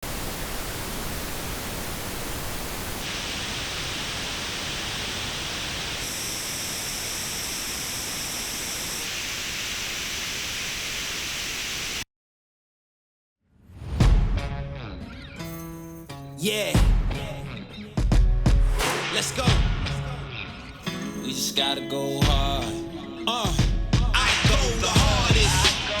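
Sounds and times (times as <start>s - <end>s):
pink noise hiss: 0.0s - 12.0s.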